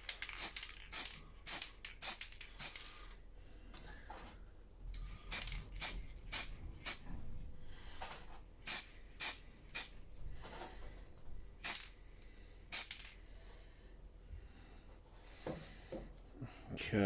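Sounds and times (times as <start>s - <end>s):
spray paint hissing: 0.1s - 2.9s, 5.3s - 7.0s, 8.6s - 9.9s, 11.6s - 11.9s, 12.7s - 13.1s.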